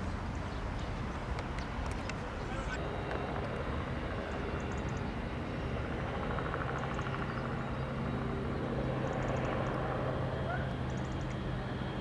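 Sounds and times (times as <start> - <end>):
helicopter engine drone: 2.4 - 12.0
helicopter rotor beat: 2.6 - 12.0.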